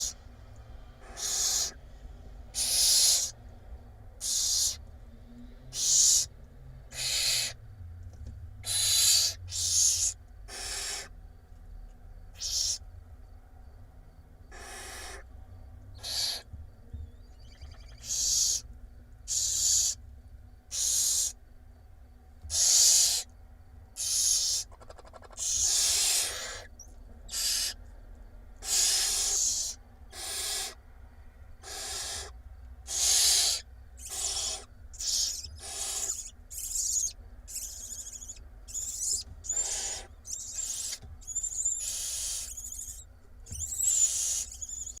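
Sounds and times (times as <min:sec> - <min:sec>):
owl chicks hissing rasps: 0:00.0 - 0:00.3, 0:00.9 - 0:03.4, 0:04.2 - 0:04.9, 0:05.7 - 0:06.3, 0:06.9 - 0:07.6, 0:08.6 - 0:11.2, 0:12.3 - 0:12.9, 0:14.5 - 0:15.3, 0:16.0 - 0:16.5, 0:17.4 - 0:20.0, 0:20.7 - 0:21.4, 0:22.5 - 0:23.3, 0:24.0 - 0:27.8, 0:28.6 - 0:30.8, 0:31.6 - 0:45.0.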